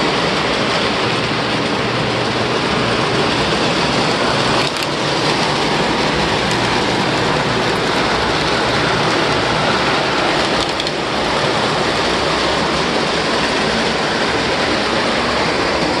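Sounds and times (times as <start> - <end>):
model trains rattling whir: 0.0 - 16.0.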